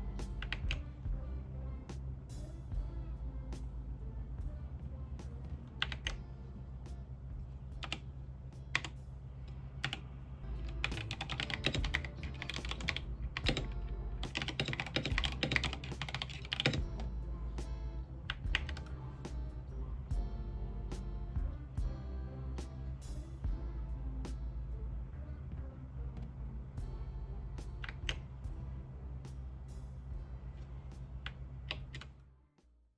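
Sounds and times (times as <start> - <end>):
background music: 0.0 - 32.2
mechanical keyboard typing: 10.7 - 16.8.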